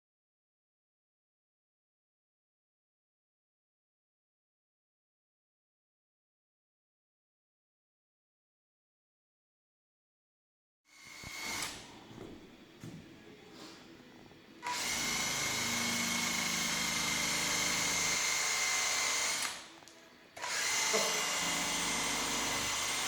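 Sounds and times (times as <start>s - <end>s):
electric drill boring into wood: 10.9s - 11.9s, 14.6s - 19.7s, 20.4s - 23.0s.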